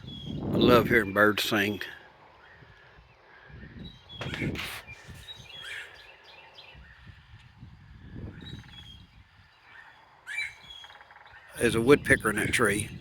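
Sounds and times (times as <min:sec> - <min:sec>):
songbirds chirping and whistling: 0:00.0 - 0:13.0
noisy thump: 0:04.2 - 0:04.8
rattling bird trill: 0:09.7 - 0:11.9.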